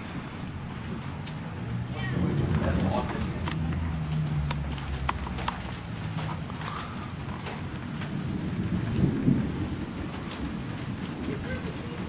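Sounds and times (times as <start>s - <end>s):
rain falling: 0.0s - 12.0s
drops tapping close by: 3.1s - 6.6s.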